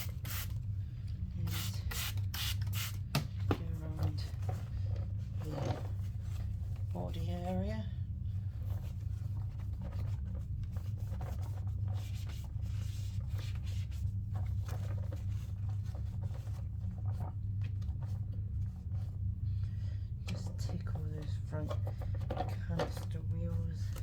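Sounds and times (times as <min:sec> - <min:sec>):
steady low hum: 0:00.0 - 0:24.0
cloth rubbing on plastic: 0:08.5 - 0:17.8.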